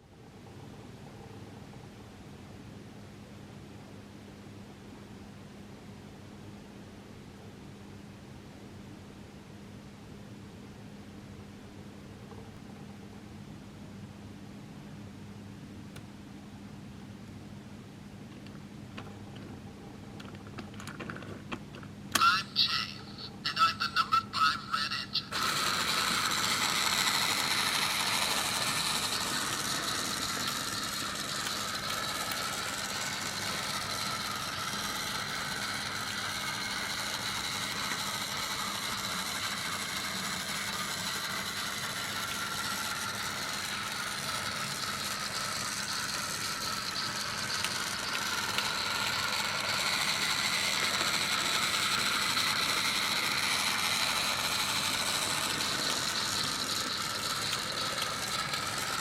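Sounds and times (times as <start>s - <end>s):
toy train motor whirring: 22.1s - 22.9s, 23.5s - 59.0s.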